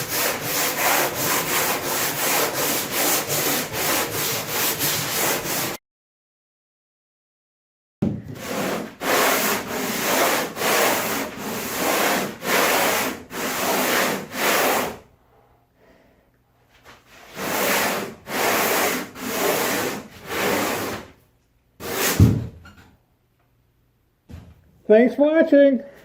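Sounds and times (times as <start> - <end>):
sandpaper sanding wood: 0.0 - 5.8, 8.4 - 15.0, 17.3 - 21.0.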